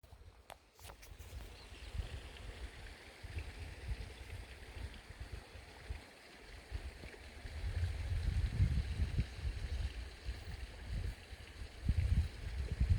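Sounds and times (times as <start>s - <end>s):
wind buffeting microphone: 7.5s - 12.9s.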